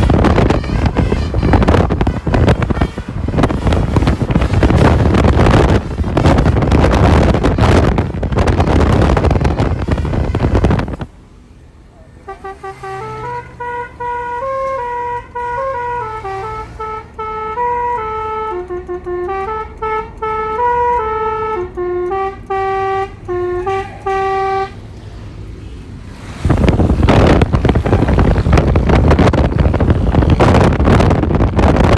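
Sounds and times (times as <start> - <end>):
loud rushing noise: 0.0 - 11.1, 24.8 - 31.9
musical air horn tune: 0.0 - 11.1, 12.3 - 24.8, 26.5 - 31.1.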